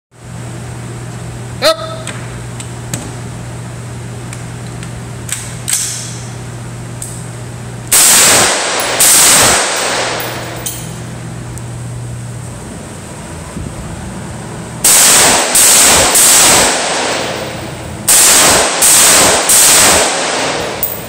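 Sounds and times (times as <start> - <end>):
loud rifle shots: 7.9 - 10.6, 14.8 - 20.9.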